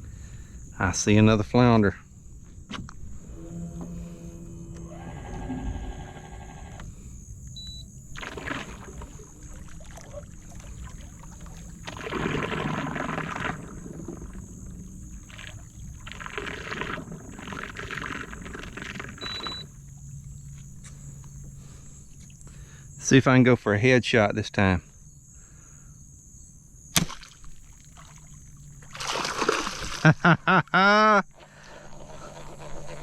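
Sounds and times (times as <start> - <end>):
night insects droning: 0.0 - 33.0
water swishing and sloshing: 2.3 - 22.6, 27.0 - 30.2.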